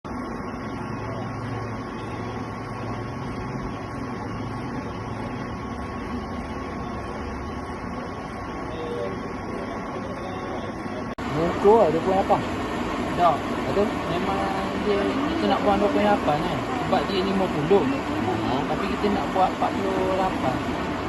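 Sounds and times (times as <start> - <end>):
machine tool high whine: 0.1 - 21.0.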